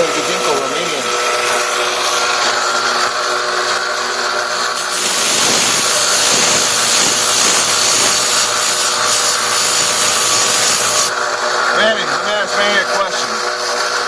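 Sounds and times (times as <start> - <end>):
electric grinder running: 0.0 - 14.0
blade grinding hiss: 4.7 - 11.1.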